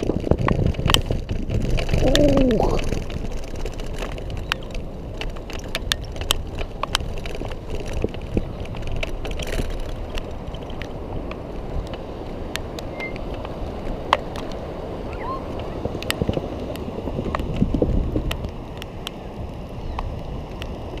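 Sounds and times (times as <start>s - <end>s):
sharp clicks and rattles: 0.0s - 12.6s
scooter wheels rumbling on paving: 0.0s - 21.0s
wind on camera: 0.0s - 21.0s.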